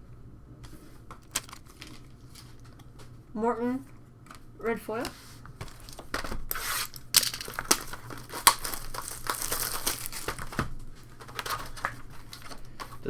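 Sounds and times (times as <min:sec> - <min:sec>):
foil wrapper crinkling and tearing: 0:05.6 - 0:12.8.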